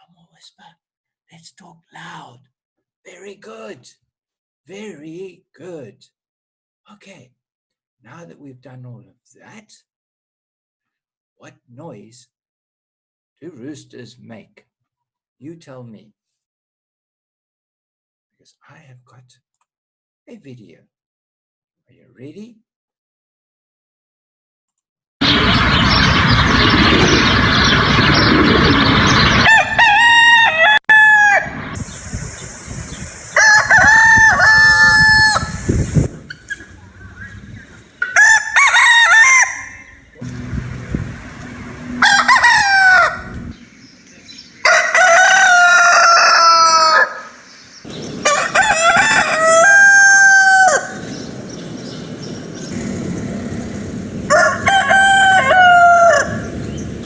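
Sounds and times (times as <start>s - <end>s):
loud rushing noise: 25.2s - 29.8s, 40.2s - 43.8s, 51.0s - 55.2s
rooster crowing: 28.8s - 31.7s, 33.3s - 35.7s, 38.0s - 40.0s, 41.8s - 43.5s, 44.6s - 47.4s, 48.2s - 52.3s, 54.3s - 56.8s.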